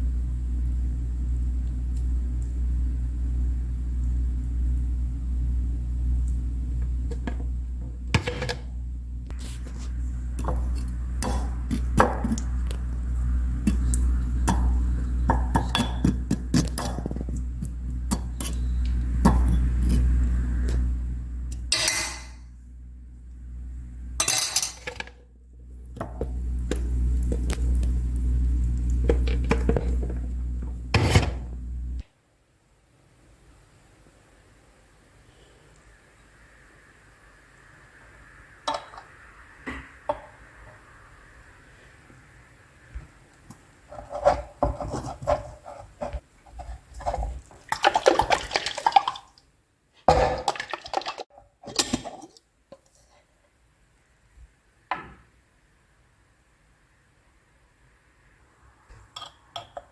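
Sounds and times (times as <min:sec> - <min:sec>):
low steady rumble: 0:00.0 - 0:32.0
dishes clattering: 0:24.2 - 0:25.1
utensils clinking on dishware: 0:24.2 - 0:25.1
liquid splashing and pouring: 0:47.0 - 0:49.5, 0:50.1 - 0:52.4.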